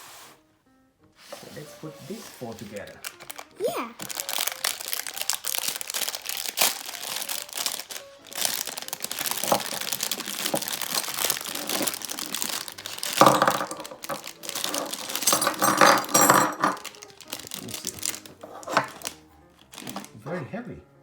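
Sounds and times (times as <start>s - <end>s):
plastic packaging crinkling: 1.8s - 20.2s
metal parts clinking: 9.0s - 19.1s.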